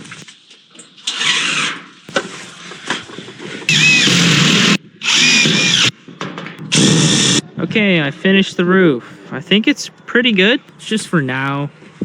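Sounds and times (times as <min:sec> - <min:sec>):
cordless drill driving screws: 0:01.0 - 0:01.9, 0:03.7 - 0:05.9, 0:06.7 - 0:07.4.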